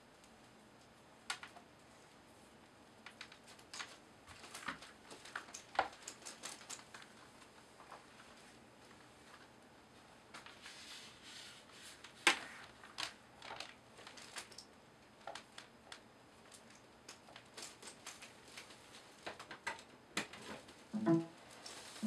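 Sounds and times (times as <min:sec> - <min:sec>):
keyboard and packaging clicks and rustles: 0:00.2 - 0:01.7, 0:03.0 - 0:08.4, 0:11.8 - 0:20.8.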